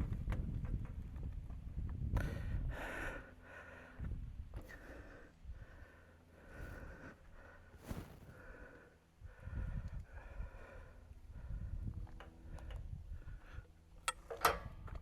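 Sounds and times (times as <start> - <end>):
heavy breathing: 2.2 - 11.9.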